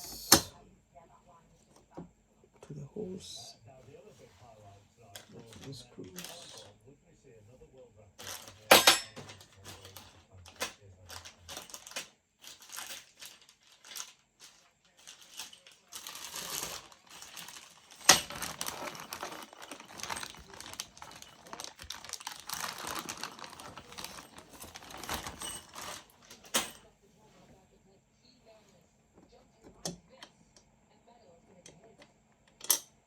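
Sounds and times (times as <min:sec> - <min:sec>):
furniture parts clicking and rattling: 0:08.2 - 0:26.9
rustling: 0:08.2 - 0:27.6.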